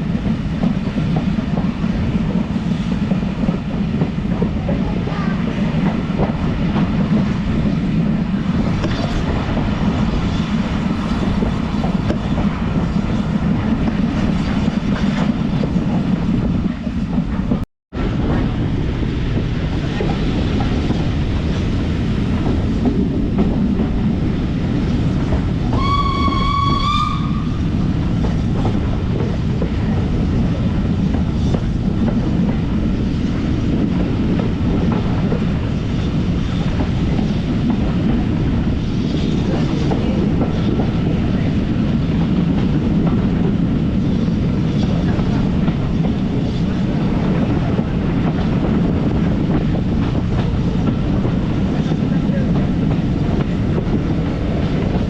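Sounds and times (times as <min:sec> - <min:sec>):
train wheels clickety-clack: 0:00.0 - 0:55.0
train whistle: 0:25.7 - 0:27.6.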